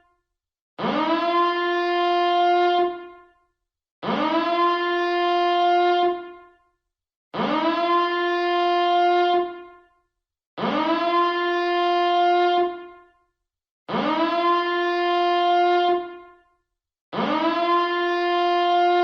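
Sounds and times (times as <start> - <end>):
alarm siren blasts: 0.8 - 3.3, 4.0 - 6.5, 7.4 - 9.9, 10.6 - 13.2, 13.9 - 16.5, 17.1 - 19.0.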